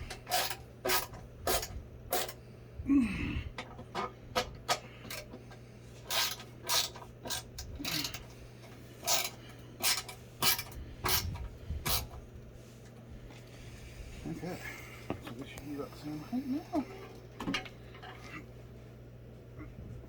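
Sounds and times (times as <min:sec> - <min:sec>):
tool scraping on metal: 0:00.0 - 0:02.4, 0:06.0 - 0:12.2.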